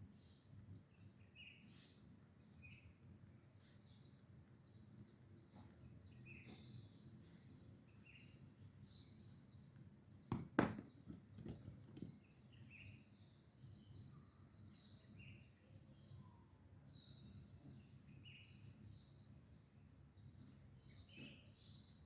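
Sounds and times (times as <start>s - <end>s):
faint birds chirping: 0.0s - 22.0s
knocks on a desk: 10.3s - 12.1s
soft taps: 10.3s - 12.2s.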